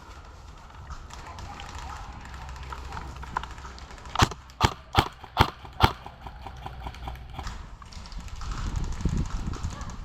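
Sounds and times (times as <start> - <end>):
airsoft rifle shots: 4.1 - 7.6.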